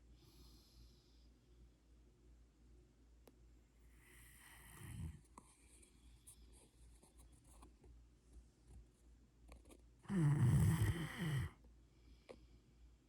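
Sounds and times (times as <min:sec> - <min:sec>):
dog snoring: 0:04.0 - 0:05.3, 0:10.1 - 0:11.6.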